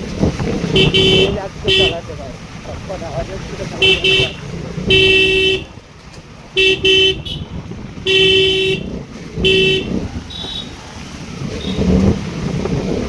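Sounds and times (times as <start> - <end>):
engine and road rumble: 0.0 - 13.0
vehicle horn toots: 0.7 - 2.1, 3.6 - 5.8, 6.6 - 10.8.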